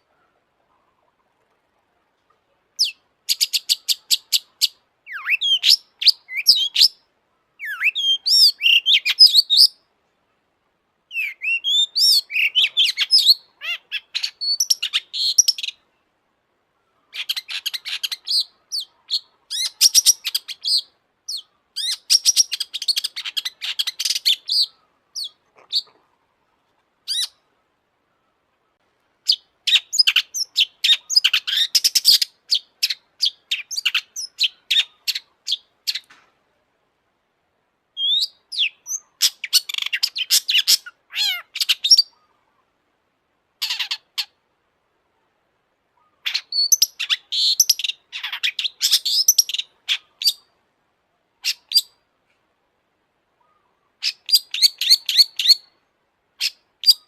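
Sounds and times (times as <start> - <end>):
bird chattering and whistling: 2.8 - 7.0, 7.6 - 9.8, 11.1 - 15.8, 17.1 - 26.1, 27.1 - 27.4, 29.3 - 36.1, 38.0 - 42.3, 46.0 - 50.5, 54.0 - 55.7, 56.4 - 57.0.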